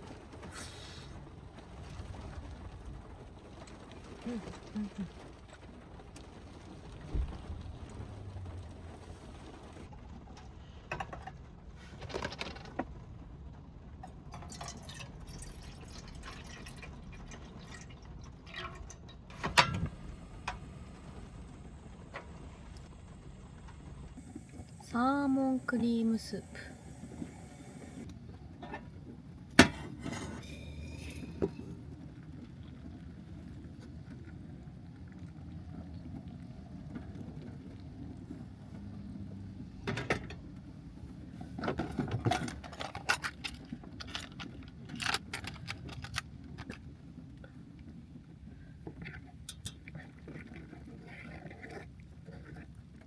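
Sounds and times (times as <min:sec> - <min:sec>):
steady low hum: 0:07.1 - 0:28.1
cooking utensils clicking and knocking: 0:14.0 - 0:28.0.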